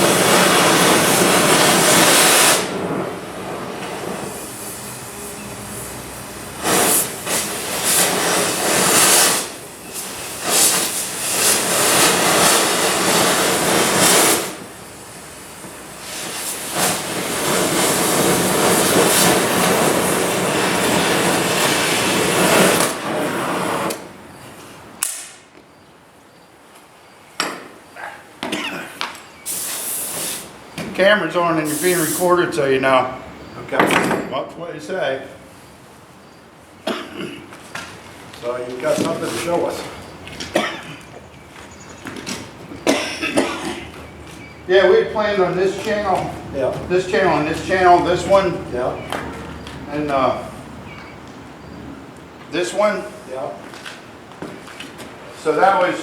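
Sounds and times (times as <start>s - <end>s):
cutting torch hissing: 0.0s - 24.2s, 29.4s - 30.8s, 31.4s - 33.7s, 38.4s - 51.9s.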